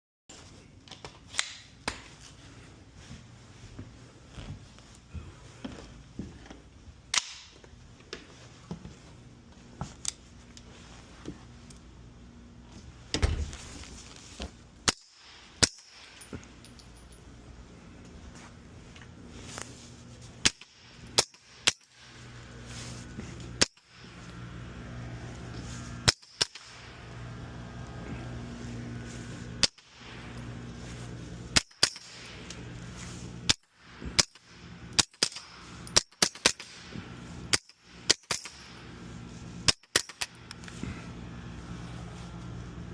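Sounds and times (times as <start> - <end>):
steady low hum: 0.3 - 42.9.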